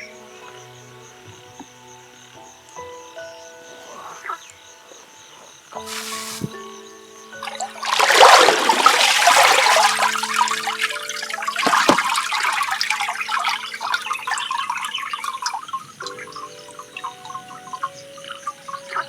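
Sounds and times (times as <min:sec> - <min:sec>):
background music with held tones: 0:00.0 - 0:19.0
water pouring and splashing: 0:05.8 - 0:06.7, 0:07.4 - 0:19.0.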